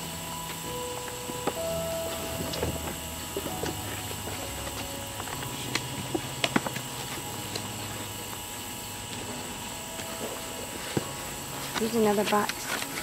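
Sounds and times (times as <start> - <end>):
low engine-like drone: 0.0 - 12.9.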